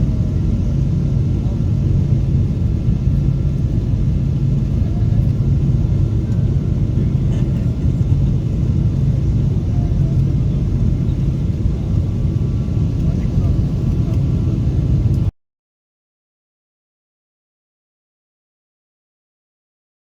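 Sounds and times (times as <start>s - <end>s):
jet engines rumbling: 0.0s - 15.3s.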